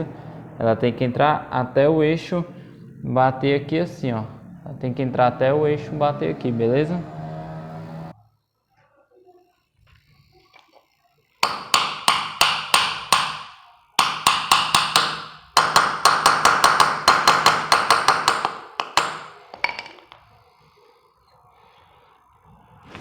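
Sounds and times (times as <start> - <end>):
hammer tapping metal bearing: 11.4 - 20.2.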